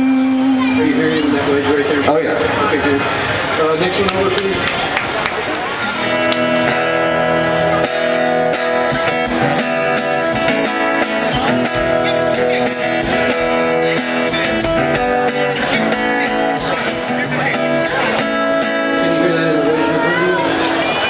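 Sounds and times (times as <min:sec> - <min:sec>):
guitar strumming chords: 0:05.5 - 0:21.0.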